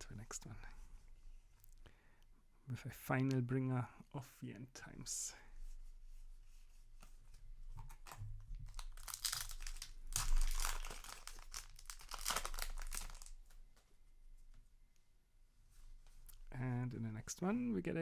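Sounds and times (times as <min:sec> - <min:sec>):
foil wrapper crinkling and tearing: 0:07.9 - 0:13.6.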